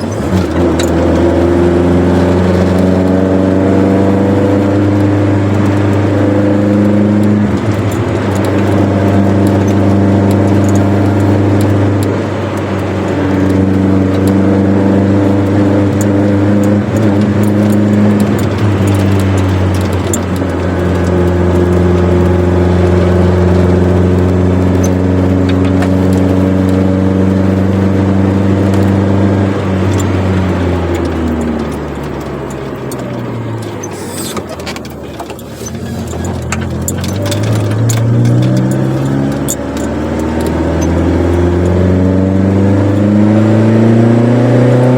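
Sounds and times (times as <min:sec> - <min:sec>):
car engine and exhaust driving: 0:00.0 - 0:44.9.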